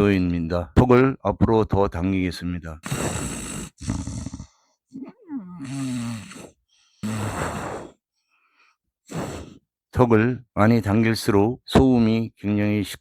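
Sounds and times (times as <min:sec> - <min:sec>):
man's noisy nasal breathing: 0:02.8 - 0:09.6.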